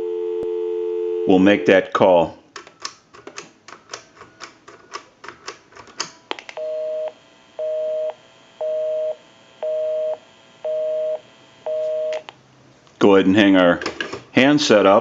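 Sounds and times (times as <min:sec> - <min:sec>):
telephone busy signal beeps: 0:06.6 - 0:12.2.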